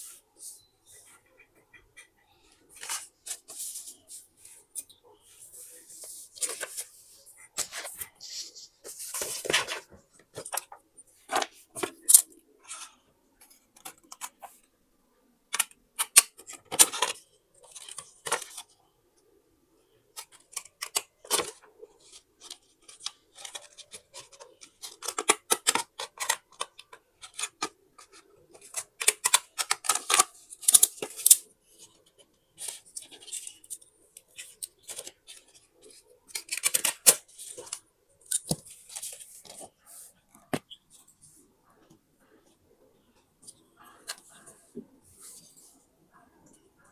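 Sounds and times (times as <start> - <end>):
paper rustling and crinkling: 5.4 - 13.0.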